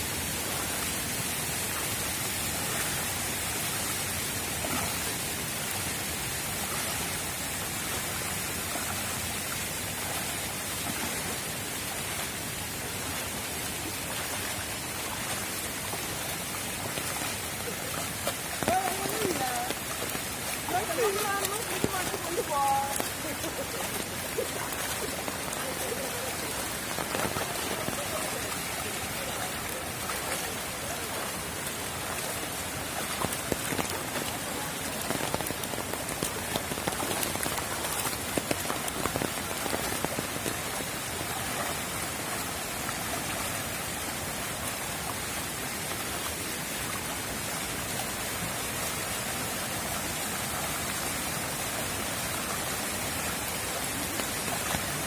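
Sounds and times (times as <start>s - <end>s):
rushing rain and floodwater: 0.0s - 55.0s
sharp splashes: 1.8s - 43.6s.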